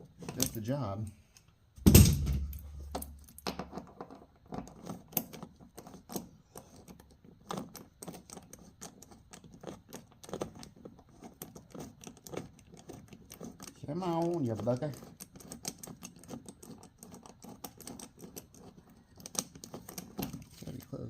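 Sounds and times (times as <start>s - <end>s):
loud knock: 1.8s - 2.6s.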